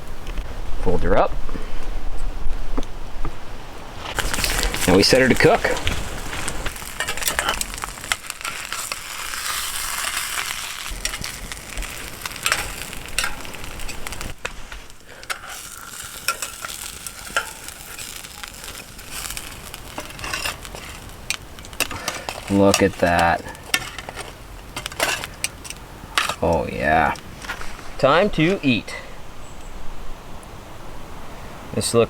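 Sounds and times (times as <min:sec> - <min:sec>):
food sizzling in a pan: 0:04.1 - 0:27.0.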